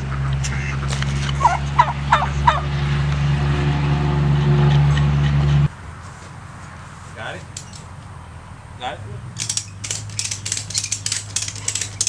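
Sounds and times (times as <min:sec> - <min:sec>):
turkey gobbling: 0:00.0 - 0:02.7
low motor hum: 0:00.0 - 0:05.9.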